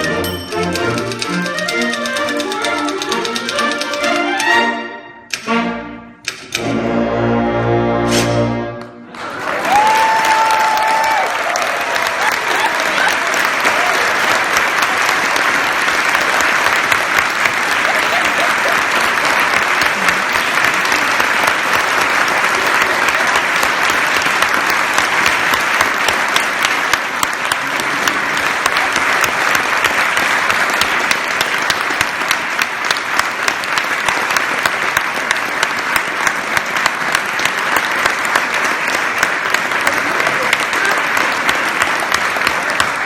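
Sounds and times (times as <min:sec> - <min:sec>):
rhythmic clapping: 0:00.0 - 0:06.8, 0:08.8 - 0:43.0
audience applauding: 0:08.8 - 0:43.0.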